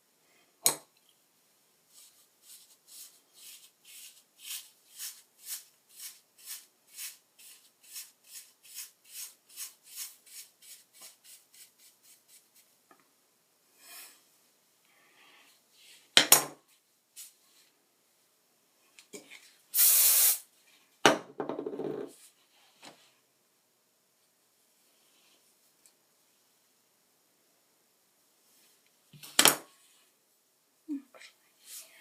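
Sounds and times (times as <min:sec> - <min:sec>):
comb rasping through hair: 0:01.9 - 0:12.6.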